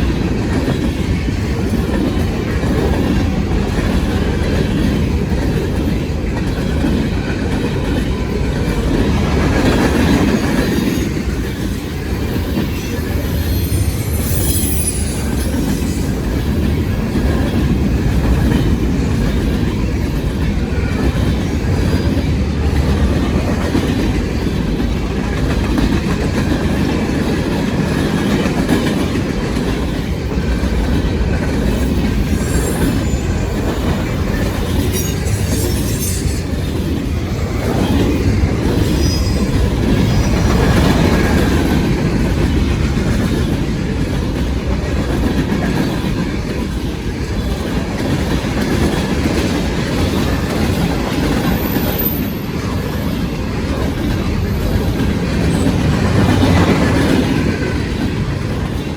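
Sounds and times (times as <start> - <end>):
train clickety-clack over joints: 0.0 - 58.9
train wheels rumbling on rails: 0.0 - 58.9
high-pitched wheel squeals: 12.6 - 17.0, 31.7 - 37.0, 38.7 - 41.0.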